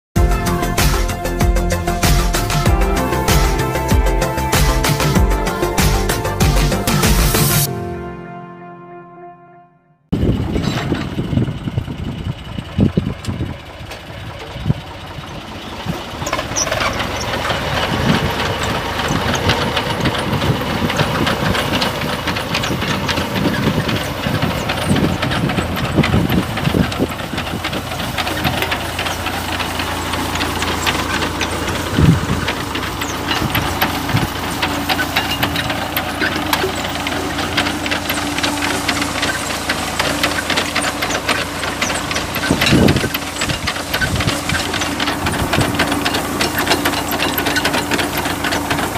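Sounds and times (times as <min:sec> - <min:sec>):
tractor engine running: 0:00.1 - 0:08.2, 0:10.1 - 0:48.9
harvester parts clattering: 0:10.3 - 0:48.9.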